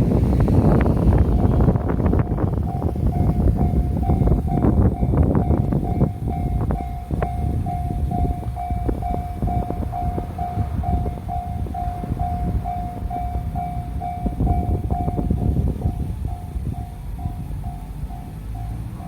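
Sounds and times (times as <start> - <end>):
train rumbling and clattering: 0.0 - 19.0
level crossing warning bell: 0.2 - 19.0.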